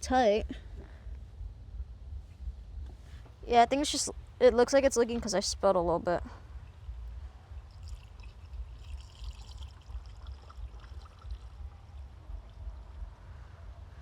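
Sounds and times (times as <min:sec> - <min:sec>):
low rumble: 0:00.0 - 0:09.2, 0:09.8 - 0:14.0
fluid pouring and splashing: 0:07.7 - 0:12.2.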